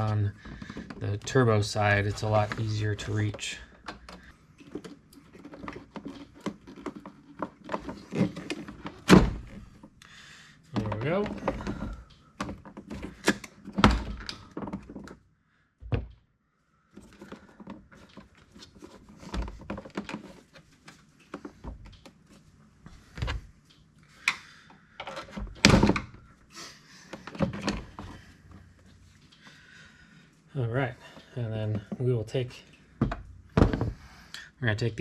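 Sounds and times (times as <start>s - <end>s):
plastic knocks and thunks: 3.8s - 9.8s, 10.8s - 15.2s, 15.8s - 16.2s, 17.1s - 20.4s, 25.3s - 26.2s, 33.0s - 34.1s.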